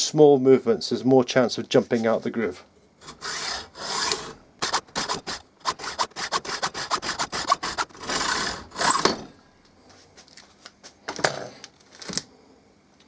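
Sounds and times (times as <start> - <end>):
hacksaw cutting metal bolt: 3.0 - 9.3.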